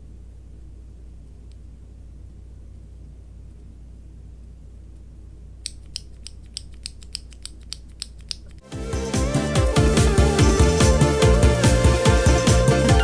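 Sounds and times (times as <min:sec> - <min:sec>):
low hum: 0:08.2 - 0:13.0.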